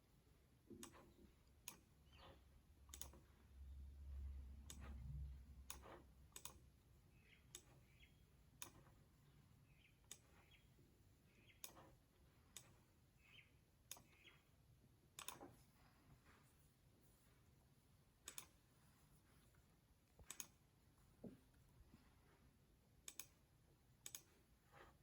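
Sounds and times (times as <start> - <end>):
computer mouse clicks: 0.7 - 3.4, 4.1 - 9.0, 9.7 - 10.6, 11.3 - 14.4, 15.1 - 15.7, 18.2 - 18.6, 20.1 - 20.7, 23.0 - 25.0.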